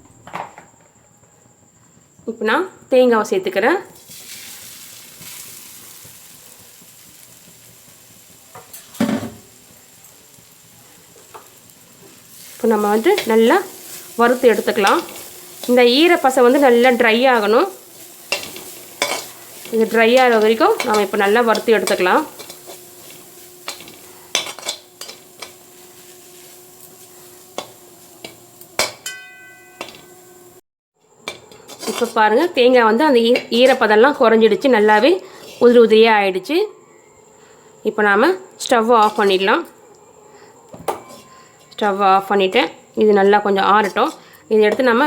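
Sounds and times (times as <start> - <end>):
coconut sizzling in oil: 4.0 - 32.3, 38.8 - 39.5
spatula knocking and scraping pan: 10.7 - 30.4, 31.2 - 32.2
pan ringing: 28.8 - 30.6
utensil scraping coconut in pan: 31.6 - 32.2.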